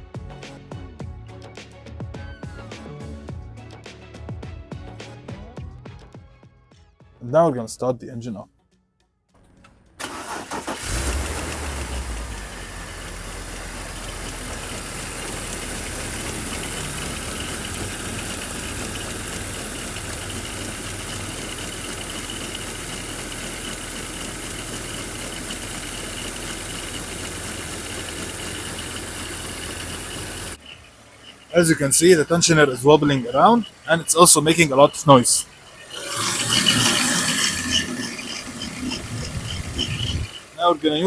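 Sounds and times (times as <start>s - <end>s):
car engine starting and idling: 9.4s - 41.0s
belt tensioner noise: 13.0s - 41.0s.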